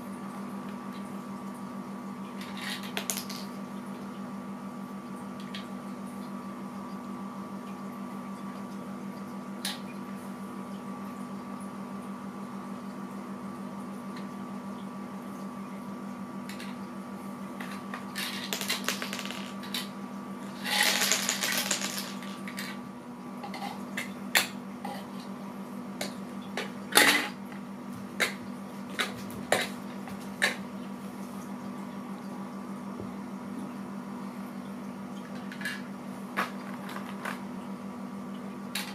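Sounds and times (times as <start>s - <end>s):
steady electrical hum: 0.0s - 38.9s
game pieces clicking and knocking: 18.2s - 19.8s, 20.7s - 22.3s
game pieces clattering: 18.2s - 19.9s, 20.6s - 22.5s.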